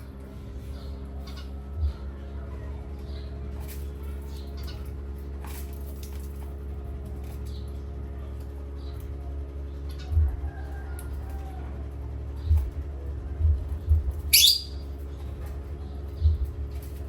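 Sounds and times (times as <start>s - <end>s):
steady low hum: 0.0s - 17.0s
parrots chirping: 14.3s - 14.8s.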